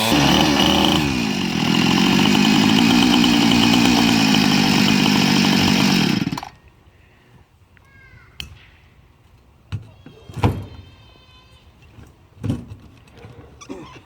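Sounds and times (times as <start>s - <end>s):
chainsaw cutting log: 0.0s - 6.6s.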